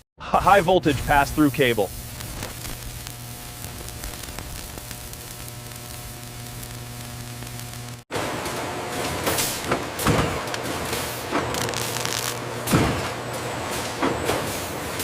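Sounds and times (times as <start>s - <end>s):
machinery hum and hiss: 0.4s - 15.0s
loud rough noise: 10.6s - 12.7s.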